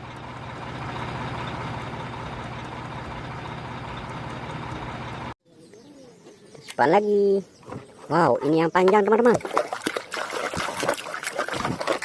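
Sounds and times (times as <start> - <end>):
truck engine idling: 0.0 - 5.8.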